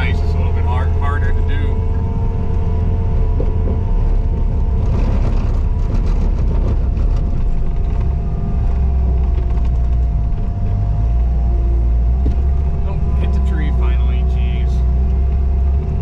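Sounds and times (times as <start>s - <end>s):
skid steer engine under load: 0.0s - 16.0s
steady whine: 0.0s - 16.0s
rattling and clatter: 1.8s - 11.4s.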